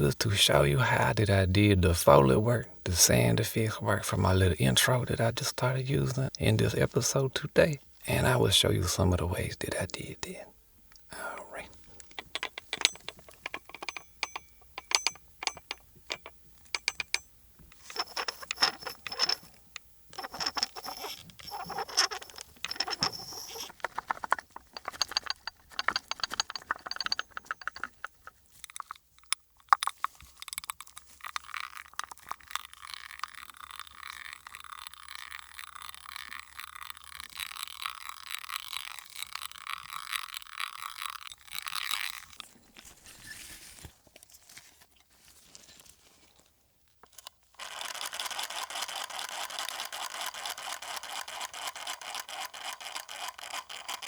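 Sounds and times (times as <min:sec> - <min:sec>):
metallic jingles: 0:11.1 - 0:29.4
rustling scrape: 0:20.2 - 0:28.1, 0:42.4 - 0:46.5.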